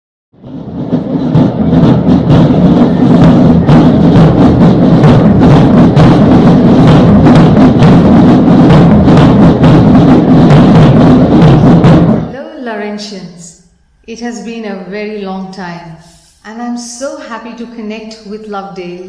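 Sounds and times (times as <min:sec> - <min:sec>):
percussion-driven music: 0:00.4 - 0:13.7.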